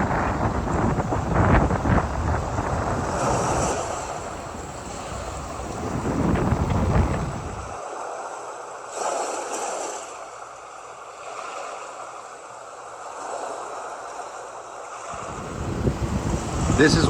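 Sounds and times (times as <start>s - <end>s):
ocean waves breaking on beach: 0.0s - 7.8s, 15.1s - 17.0s.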